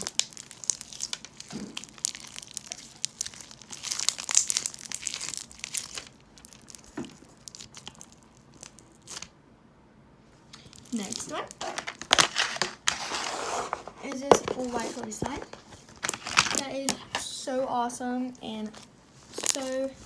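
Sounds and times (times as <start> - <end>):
crunchy slime crackling and popping: 0.0 - 9.3, 10.5 - 12.9, 18.6 - 20.0.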